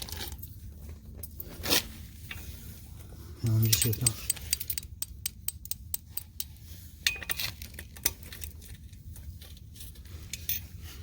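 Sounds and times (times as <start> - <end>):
metal hardware clinking: 3.5 - 8.9.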